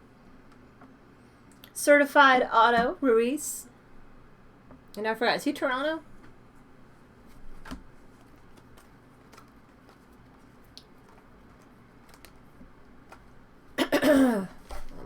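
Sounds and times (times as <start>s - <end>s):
trading cards handled: 7.3s - 13.3s.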